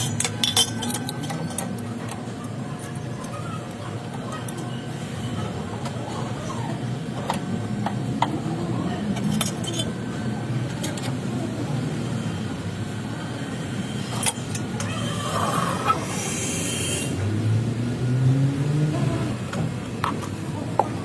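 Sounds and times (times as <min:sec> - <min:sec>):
clicks and clinks: 0:00.0 - 0:02.2
vehicle engine rumbling: 0:00.0 - 0:21.0.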